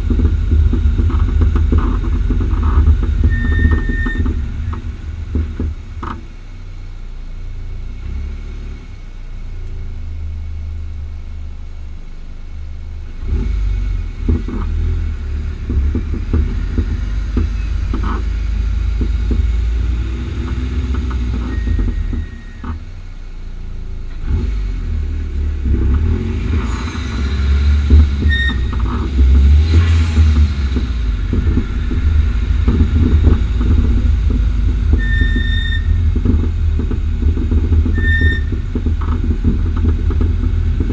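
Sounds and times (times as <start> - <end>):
suspension popping and knocking: 0.0 - 7.1, 13.1 - 23.0, 24.1 - 40.9
low road rumble: 0.0 - 40.9
short high squeaks: 3.2 - 4.8, 21.4 - 22.8, 26.7 - 29.0, 35.0 - 36.1, 37.9 - 38.6.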